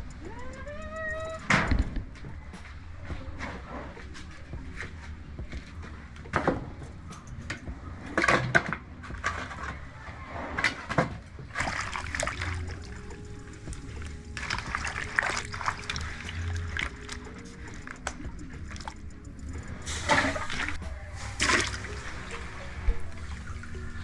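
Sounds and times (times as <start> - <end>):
water sloshing in a pot: 11.5 - 13.0.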